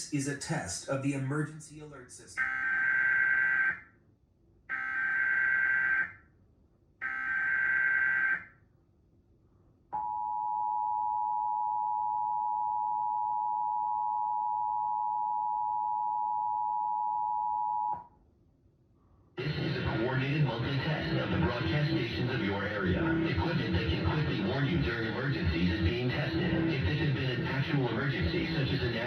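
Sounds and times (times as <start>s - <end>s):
dual-tone alarm: 2.4s - 3.9s, 4.7s - 6.2s, 7.0s - 8.5s, 10.0s - 18.0s.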